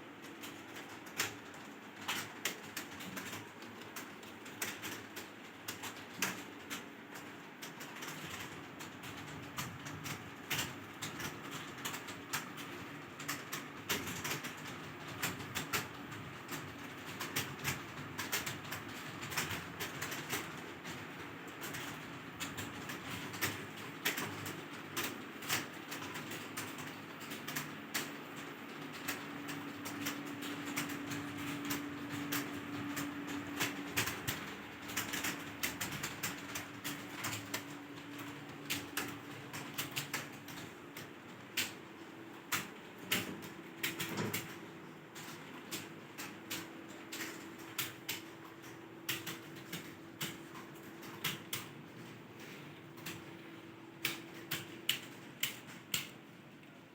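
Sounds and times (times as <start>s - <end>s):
keyboard typing clicks: 45.2s - 53.4s, 54.0s - 56.2s.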